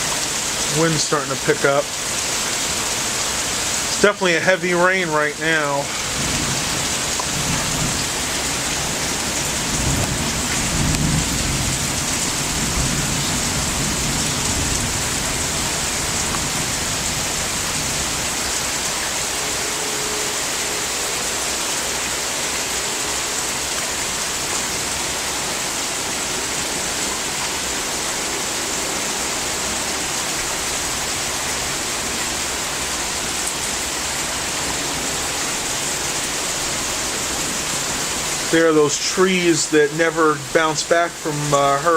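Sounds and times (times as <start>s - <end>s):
heavy rain pouring: 0.0s - 41.9s
low rumble of thunder: 6.1s - 17.5s.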